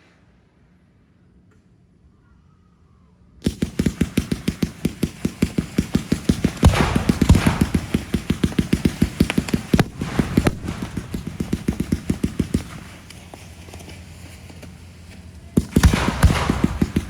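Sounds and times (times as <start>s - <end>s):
fireworks exploding: 3.4s - 17.0s
loud firework bangs: 3.5s - 17.0s.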